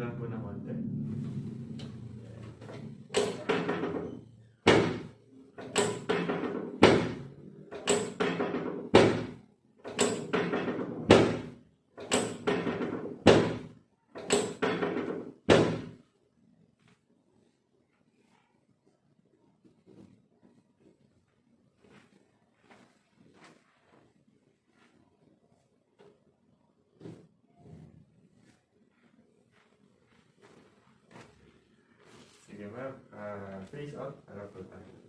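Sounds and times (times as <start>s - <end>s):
thumps against treatment table: 2.5s - 16.0s.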